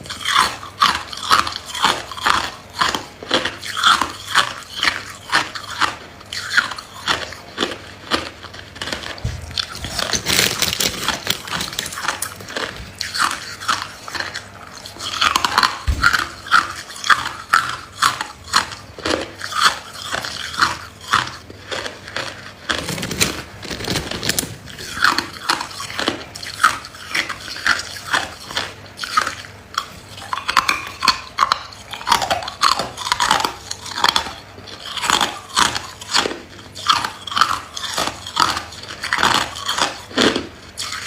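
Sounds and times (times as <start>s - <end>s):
person chewing ice: 0.0s - 41.0s.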